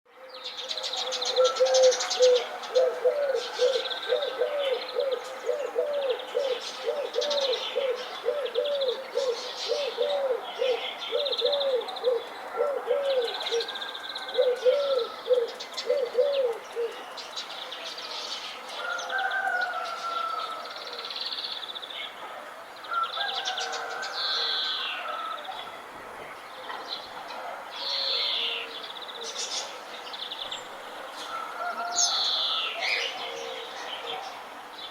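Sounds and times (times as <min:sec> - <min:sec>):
songbirds chirping: 0:00.1 - 0:34.9
dove cooing: 0:00.9 - 0:17.0.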